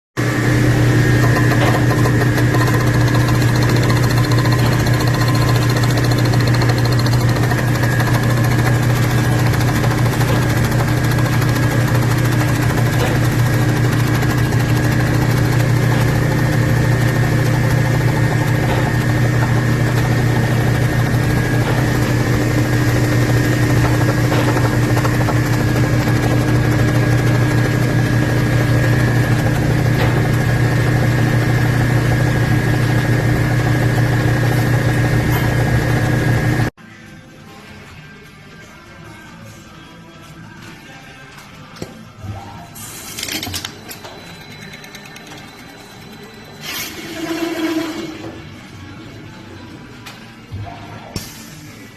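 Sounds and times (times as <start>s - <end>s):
machinery low hum: 0.2s - 36.8s.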